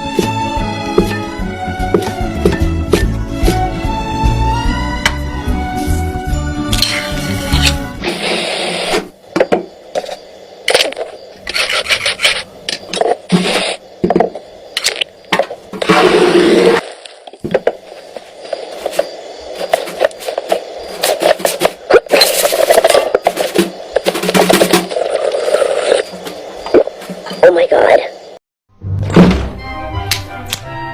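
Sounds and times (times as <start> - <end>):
sharp drum hits: 28.9 - 29.6.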